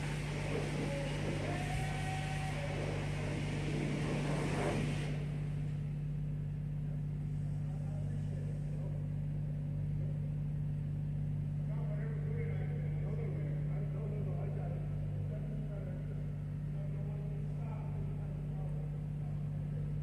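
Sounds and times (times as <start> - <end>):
high-pressure water spray hissing: 0.0 - 5.4.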